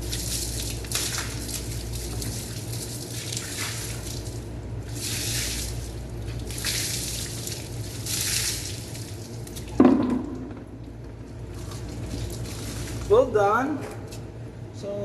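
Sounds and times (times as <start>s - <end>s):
water spraying in bursts: 0.0s - 9.8s, 11.6s - 13.2s
steady low hum: 0.0s - 15.0s.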